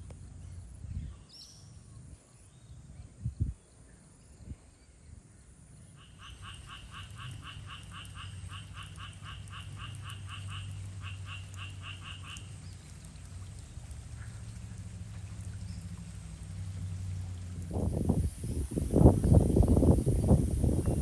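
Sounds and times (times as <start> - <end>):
frog calling: 6.0 - 12.8
low hum: 12.5 - 21.0.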